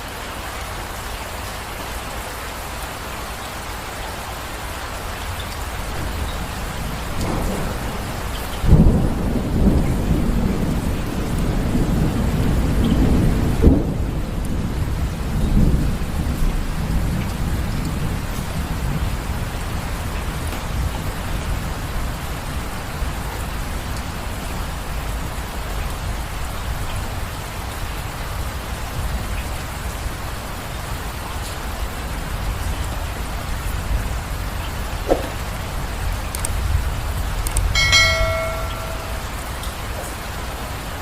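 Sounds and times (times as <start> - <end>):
heavy rain: 0.0 - 41.0
rumble of thunder: 5.7 - 22.7.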